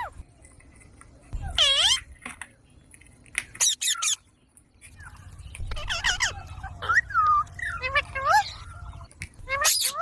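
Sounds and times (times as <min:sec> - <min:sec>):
parrot squawking and chirping: 0:01.3 - 0:02.2, 0:03.6 - 0:04.3, 0:05.0 - 0:10.0.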